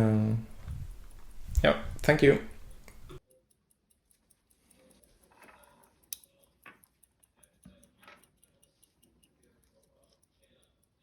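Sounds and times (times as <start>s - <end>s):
pocket watch ticking: 3.2s - 11.0s.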